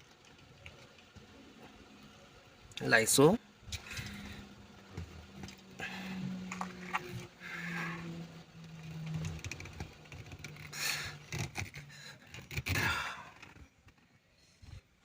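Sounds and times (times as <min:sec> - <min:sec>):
steady low hum: 0:00.0 - 0:15.0
scraping and rubbing with clicks: 0:08.6 - 0:14.9.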